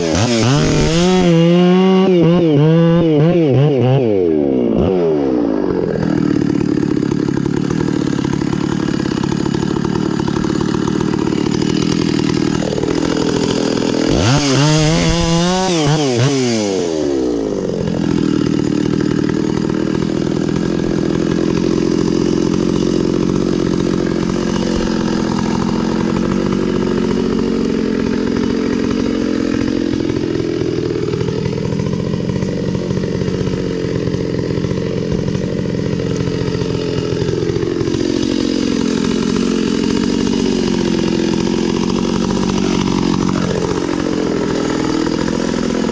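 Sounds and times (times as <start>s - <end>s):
chainsaw cutting wood: 0.0s - 45.9s.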